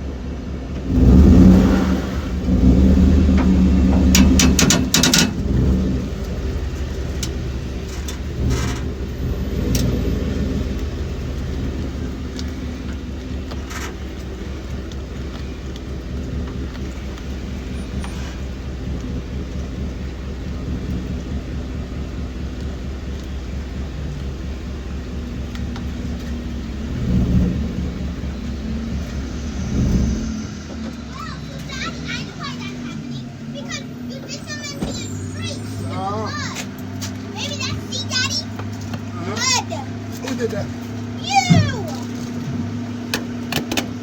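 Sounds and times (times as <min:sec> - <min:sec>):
pickup truck engine rumbling: 0:00.0 - 0:44.0.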